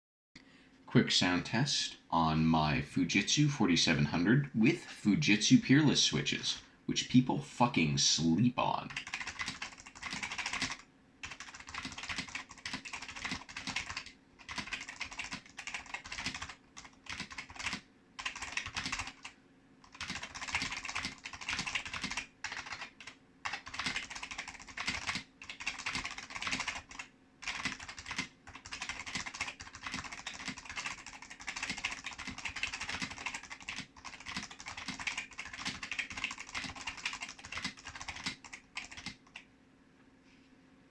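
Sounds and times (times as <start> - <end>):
keyboard typing clicks: 8.9 - 39.4.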